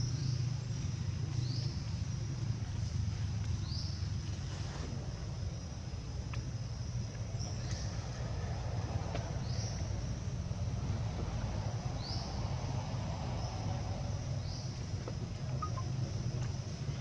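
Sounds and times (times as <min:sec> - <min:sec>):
steady low rumble: 0:00.0 - 0:17.0
high rising chirp: 0:15.6 - 0:16.0.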